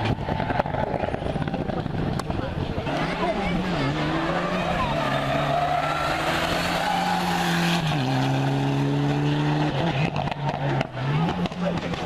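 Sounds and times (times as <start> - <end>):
rally car engine running hard: 7.6 - 12.0
engine pops and crackles: 10.0 - 12.0.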